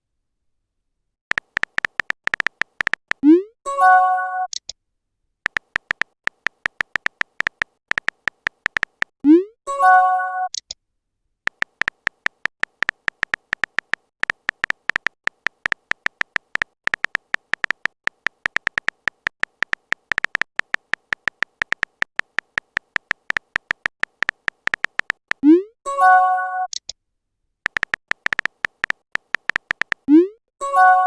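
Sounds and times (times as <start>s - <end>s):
phone keyboard typing clicks: 1.3s - 3.2s, 5.4s - 9.2s, 11.5s - 25.4s, 27.6s - 30.2s.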